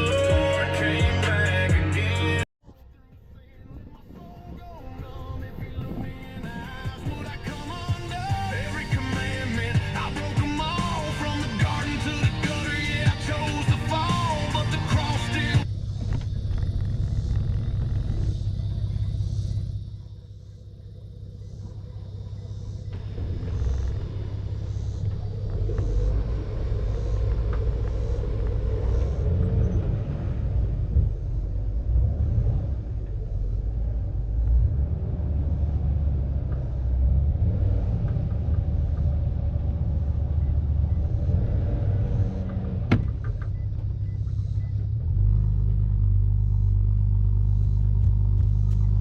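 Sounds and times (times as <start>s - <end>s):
wind: 0.0s - 49.0s
outboard motor running: 4.9s - 37.0s, 42.1s - 49.0s
water noise: 21.6s - 36.6s.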